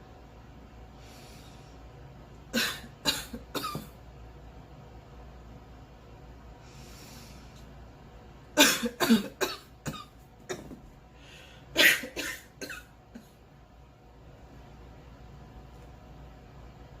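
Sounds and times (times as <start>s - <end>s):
in-breath: 0.9s - 1.9s, 6.6s - 7.7s, 11.1s - 11.7s
girl coughing: 2.6s - 4.0s, 8.6s - 10.8s, 11.8s - 12.9s.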